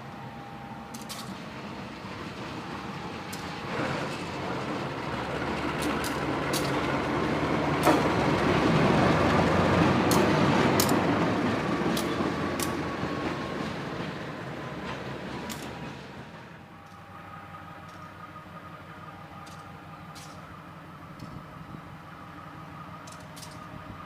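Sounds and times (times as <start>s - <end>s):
train rumbling past: 0.0s - 24.0s.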